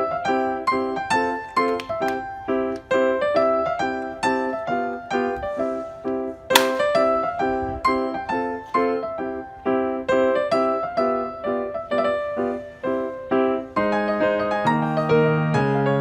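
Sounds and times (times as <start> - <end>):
keyboard piano chords: 0.0 - 16.0
sharp click: 6.6 - 7.0.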